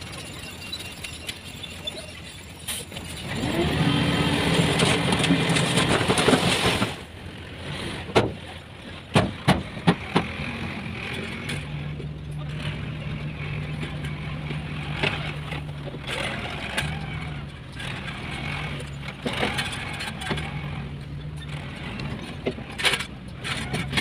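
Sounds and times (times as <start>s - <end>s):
heavy construction vehicle engine: 0.0s - 24.0s.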